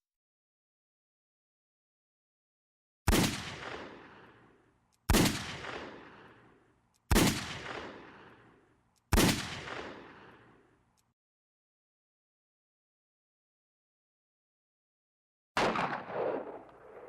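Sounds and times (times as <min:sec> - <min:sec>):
gunshots with echo: 0:03.1 - 0:10.6, 0:15.6 - 0:17.0.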